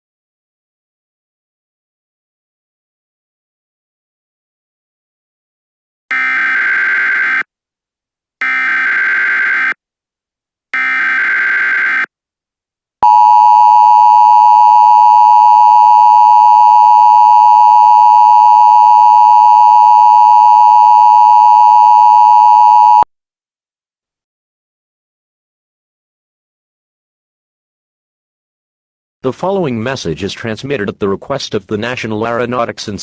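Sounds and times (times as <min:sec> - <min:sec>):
two-tone alert signal: 0:13.0 - 0:23.0.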